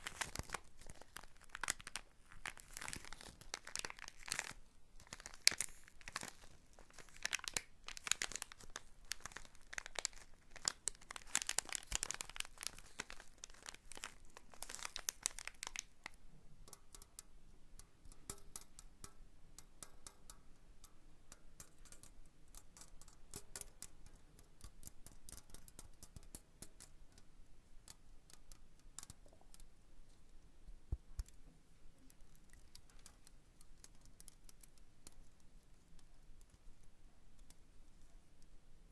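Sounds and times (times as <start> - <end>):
crinkly material rustling: 0.0 - 16.2.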